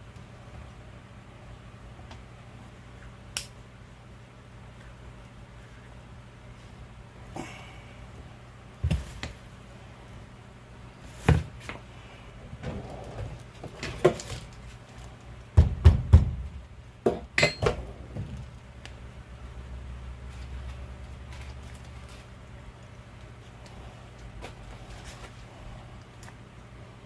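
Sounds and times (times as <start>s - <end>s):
metal tools knocking and clanking: 17.4s - 17.8s.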